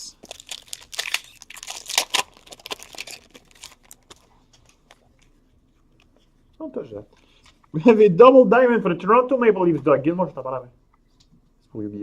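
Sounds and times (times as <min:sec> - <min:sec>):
plastic wrapper crinkling and tearing: 0:00.1 - 0:05.4.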